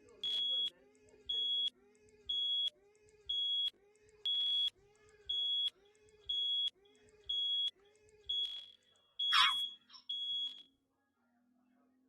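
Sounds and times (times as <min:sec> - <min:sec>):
electronic alarm beeping: 0:00.2 - 0:00.7, 0:02.3 - 0:02.7, 0:03.3 - 0:03.7, 0:04.3 - 0:04.7, 0:06.3 - 0:06.7, 0:07.3 - 0:07.7, 0:08.3 - 0:10.6.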